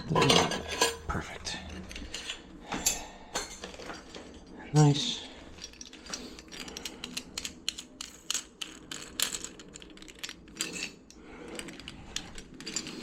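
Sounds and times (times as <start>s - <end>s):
plastic and metal parts clicking: 5.6s - 13.0s.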